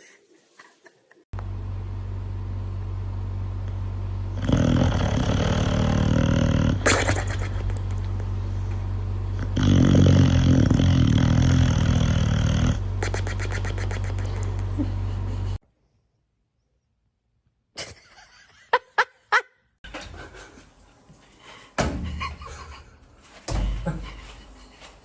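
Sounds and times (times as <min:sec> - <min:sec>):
steady low hum: 0:01.4 - 0:15.6, 0:19.9 - 0:25.0.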